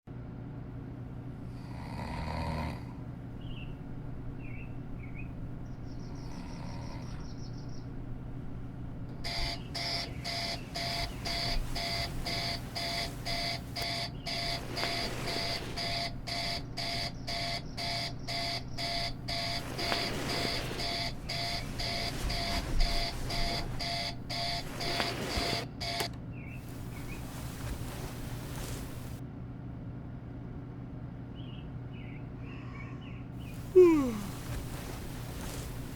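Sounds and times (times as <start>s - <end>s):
steady low hum: 0.2s - 29.4s
electronic alarm clock beeping: 9.2s - 29.2s.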